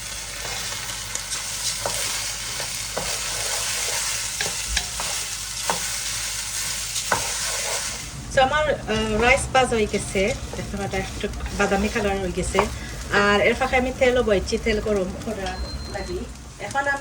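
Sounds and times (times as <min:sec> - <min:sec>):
rice and onions sizzling in oil: 0:00.0 - 0:17.0
spoon scraping a pot: 0:01.4 - 0:06.0.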